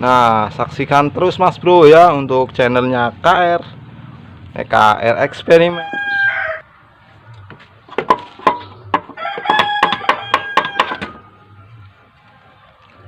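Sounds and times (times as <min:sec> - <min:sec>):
rooster crowing: 0:05.2 - 0:06.7, 0:09.0 - 0:11.5.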